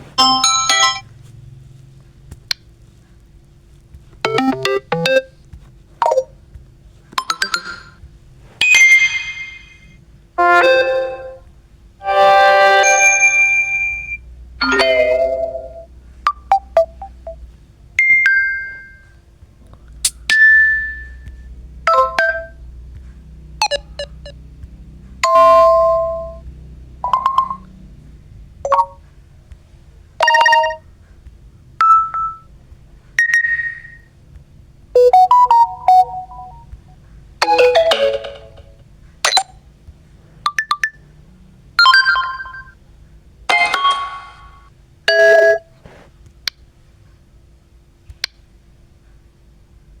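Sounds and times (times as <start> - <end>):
phone notification chimes: 0.2 - 1.1, 12.0 - 15.3.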